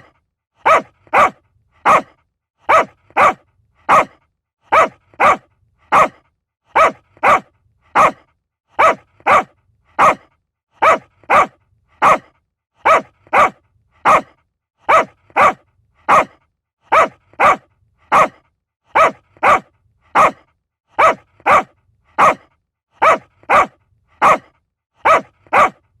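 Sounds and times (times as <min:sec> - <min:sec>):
small dog barking: 0:00.6 - 0:25.8.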